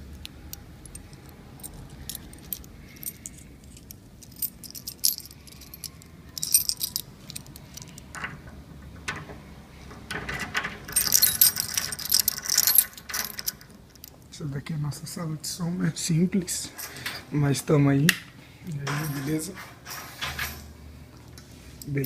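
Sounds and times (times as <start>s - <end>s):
keys jangling: 0.9s - 8.1s, 10.9s - 14.2s.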